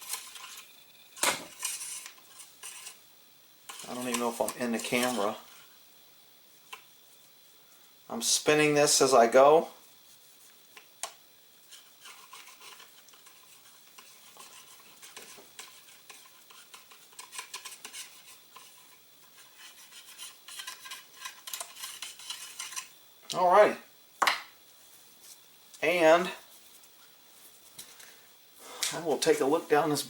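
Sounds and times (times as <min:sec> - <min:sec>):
cleaning rod scraping in barrel: 0:01.4 - 0:03.0, 0:03.7 - 0:05.5.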